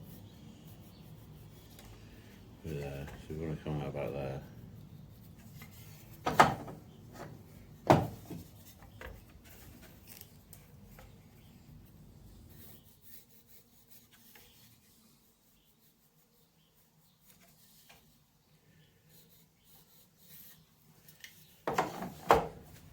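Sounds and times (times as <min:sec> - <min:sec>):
wooden knocks: 0:06.2 - 0:08.5.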